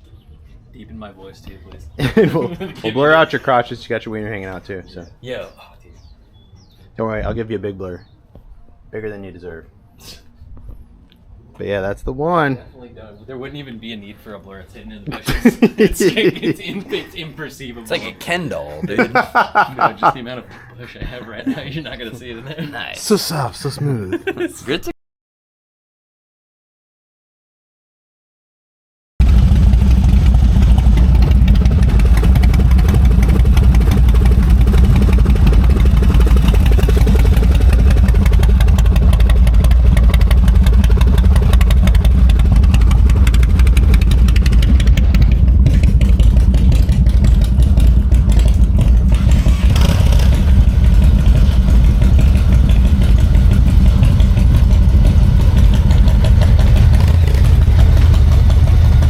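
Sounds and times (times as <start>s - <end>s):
motorcycle engine running: 29.2s - 59.0s.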